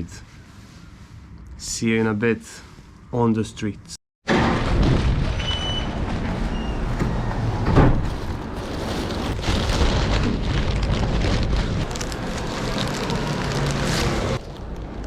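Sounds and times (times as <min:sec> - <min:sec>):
traffic rumble: 0:04.4 - 0:15.0.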